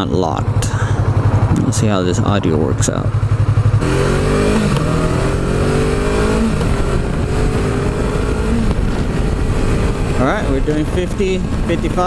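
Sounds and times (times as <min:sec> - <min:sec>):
motorcycle engine accelerating: 0:00.0 - 0:12.0
wind buffeting microphone: 0:04.6 - 0:12.0.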